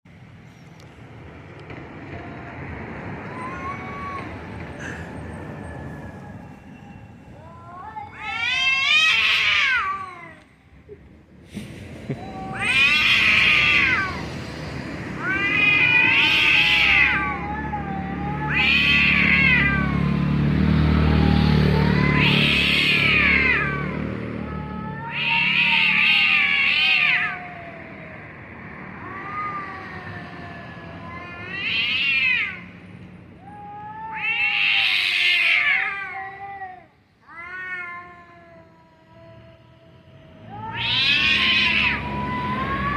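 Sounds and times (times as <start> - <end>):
cats yowling: 2.1 - 4.6, 7.4 - 10.5, 12.2 - 14.3, 15.0 - 20.2, 20.9 - 32.7, 33.4 - 42.9.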